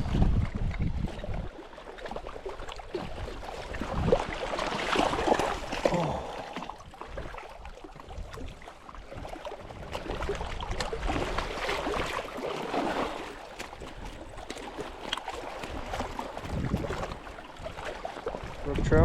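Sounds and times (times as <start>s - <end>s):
water splashing and sloshing: 0.0s - 19.0s.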